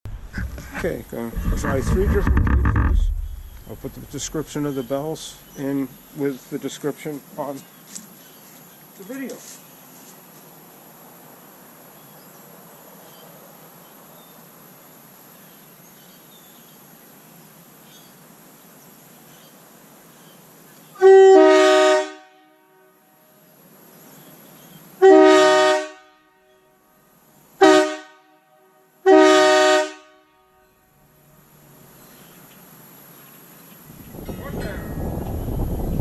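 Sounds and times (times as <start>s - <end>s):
quiet hiss: 0.1s - 21.0s, 30.6s - 36.0s
train air horn blasts: 21.0s - 23.2s, 25.0s - 26.6s, 27.6s - 30.8s.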